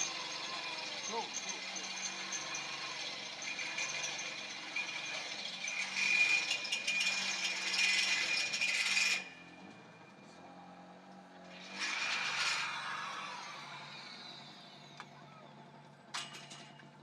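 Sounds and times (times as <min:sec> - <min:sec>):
power tool grinding metal: 0:00.0 - 0:09.5, 0:11.4 - 0:15.0.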